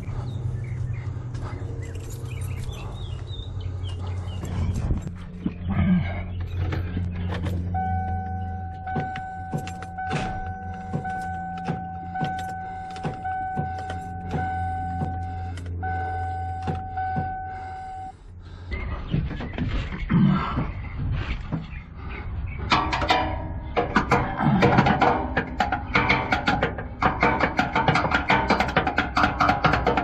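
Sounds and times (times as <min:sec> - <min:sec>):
low steady hum: 0:00.0 - 0:30.0
sharp clicks and knocks: 0:06.4 - 0:15.8, 0:22.6 - 0:30.0
electronic warning chime: 0:07.7 - 0:18.2.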